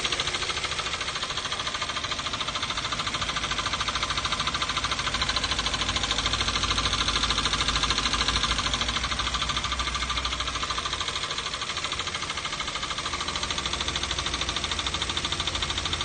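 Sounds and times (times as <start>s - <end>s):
car engine knocking: 0.0s - 16.0s
deep engine rumble: 0.0s - 16.0s.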